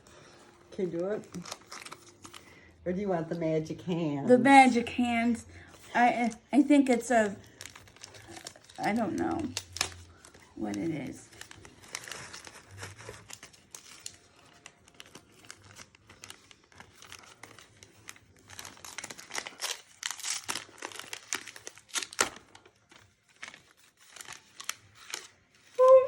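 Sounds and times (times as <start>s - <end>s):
paper and packaging crinkling: 0.0s - 2.8s, 4.4s - 26.0s
packaging torn open: 1.2s - 2.5s, 7.4s - 26.0s.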